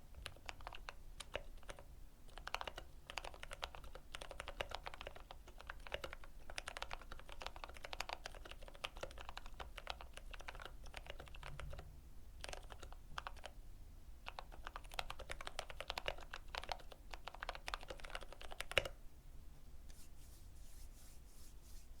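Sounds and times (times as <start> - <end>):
mechanical keyboard typing: 0.2 - 11.8, 12.4 - 13.6, 14.2 - 19.0.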